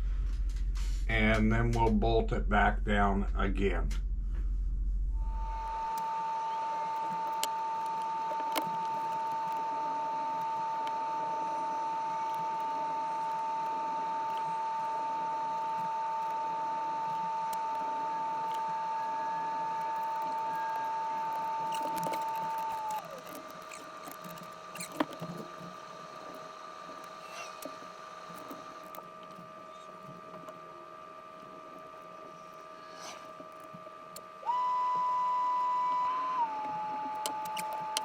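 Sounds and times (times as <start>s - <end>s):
electric motor whining: 5.2s - 38.0s
faint clicks: 19.8s - 30.6s.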